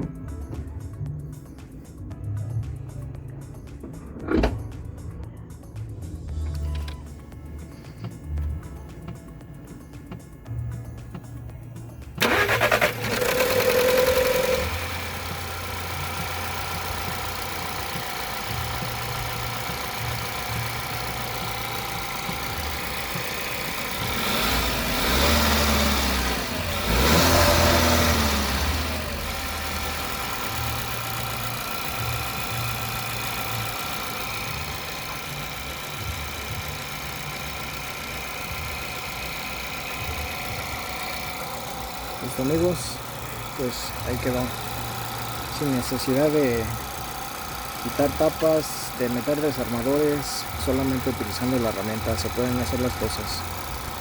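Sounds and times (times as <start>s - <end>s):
car engine starting and idling: 0.0s - 54.0s
engine revving: 12.2s - 54.0s.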